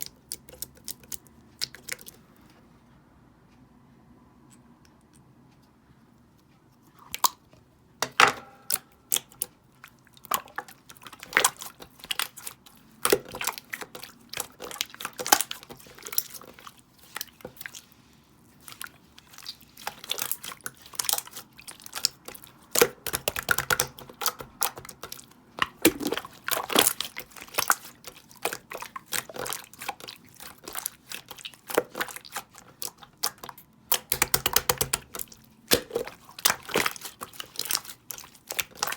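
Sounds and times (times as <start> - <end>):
slime squished by hand: 18.5 - 38.9.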